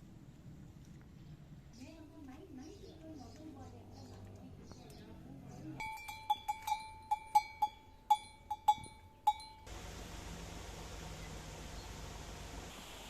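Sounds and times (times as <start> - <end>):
metal bell struck: 5.8 - 9.7
steady hiss: 9.7 - 13.0.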